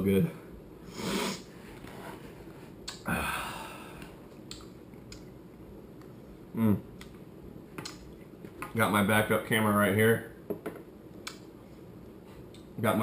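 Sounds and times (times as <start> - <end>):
man humming: 3.0 - 4.0, 6.5 - 6.9
man exhaling: 3.0 - 4.1.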